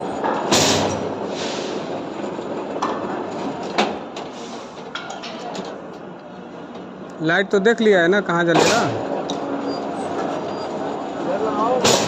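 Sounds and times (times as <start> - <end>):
sharp metal knocks: 8.5 - 9.0.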